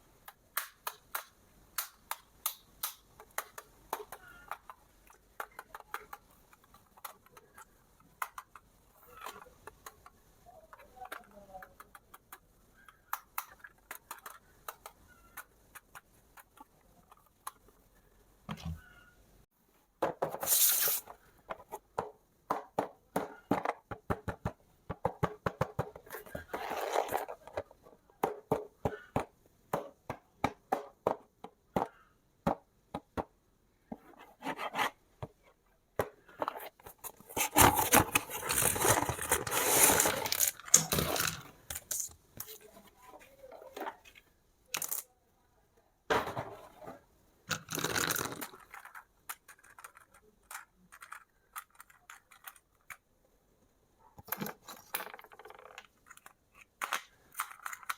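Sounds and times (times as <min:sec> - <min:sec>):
plastic and cardboard clicks: 0:00.2 - 0:17.7
packaging tearing and crinkling: 0:37.2 - 0:42.0.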